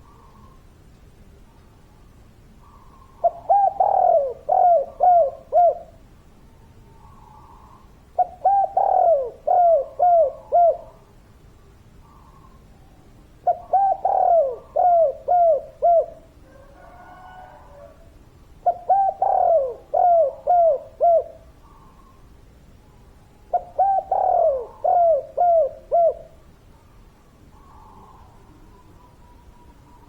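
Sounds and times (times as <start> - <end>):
dove cooing: 2.6 - 6.0, 7.1 - 11.2, 13.4 - 22.3, 23.5 - 26.4.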